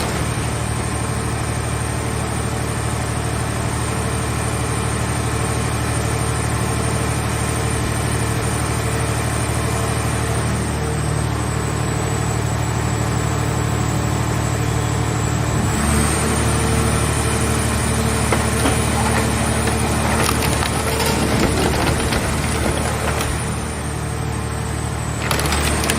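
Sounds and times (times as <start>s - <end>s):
baler engine running: 13.8s - 25.9s
metal cracking as crushed: 17.1s - 25.9s.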